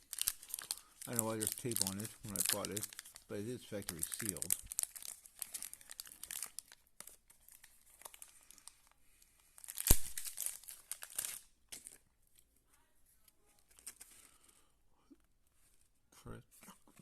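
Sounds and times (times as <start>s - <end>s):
wrapper crinkling and tearing: 0.0s - 9.0s, 9.6s - 12.5s, 13.6s - 14.5s.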